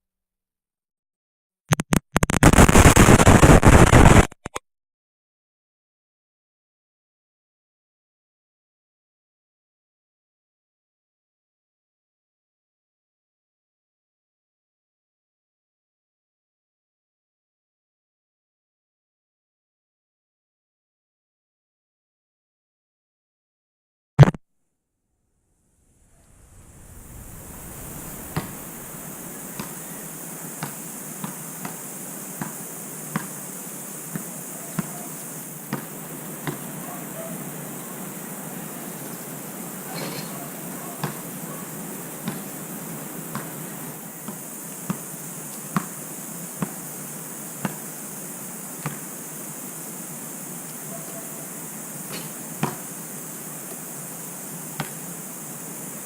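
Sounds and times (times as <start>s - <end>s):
steady high hiss: 2.5s - 4.3s, 25.7s - 56.0s.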